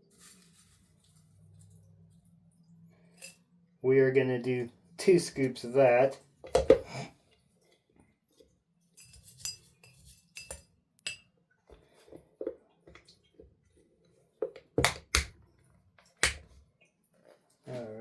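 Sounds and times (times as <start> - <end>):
scoop clinking against container: 9.0 - 11.2.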